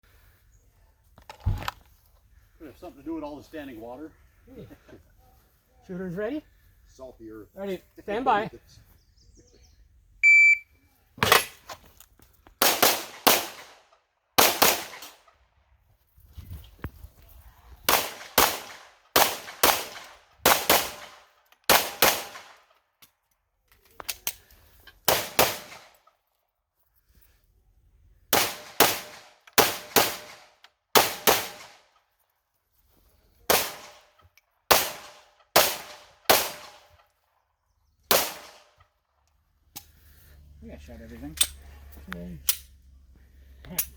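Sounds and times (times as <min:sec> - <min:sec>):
high electronic beep: 0:10.2 - 0:10.7
pistol shots: 0:12.6 - 0:13.8, 0:14.4 - 0:15.2, 0:17.9 - 0:22.6, 0:25.1 - 0:25.9, 0:28.3 - 0:31.8, 0:34.7 - 0:36.9, 0:38.1 - 0:38.6.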